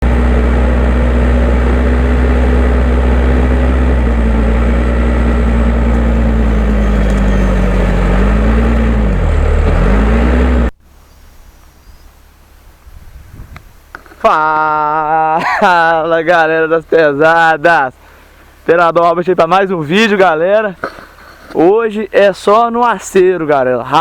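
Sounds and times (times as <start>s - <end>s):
diesel engine running loud: 0.0s - 10.8s.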